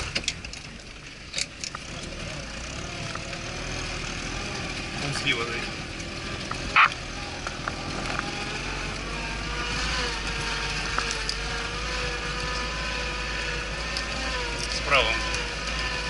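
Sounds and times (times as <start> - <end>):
small rattles and clicks: 0.0 - 2.2, 5.0 - 8.3, 10.2 - 12.7, 13.4 - 16.0
off-road vehicle engine running: 0.0 - 16.0.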